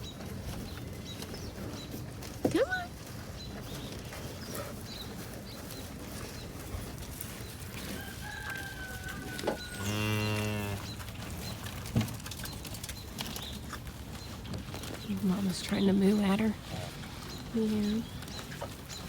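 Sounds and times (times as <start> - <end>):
cow mooing: 9.3 - 11.0.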